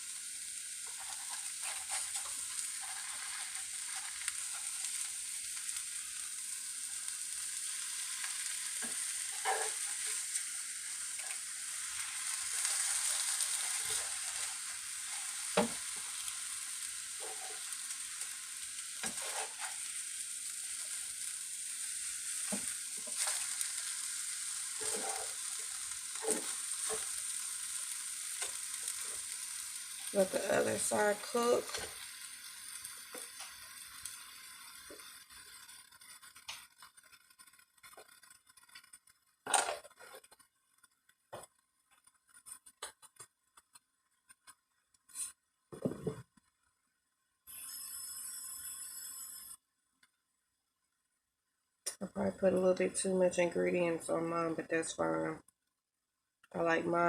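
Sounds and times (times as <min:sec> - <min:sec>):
omelette sizzling in a frying pan: 0:00.0 - 0:49.8
knocks and scrapes against pan: 0:08.8 - 0:10.1, 0:19.0 - 0:19.8, 0:45.1 - 0:46.4.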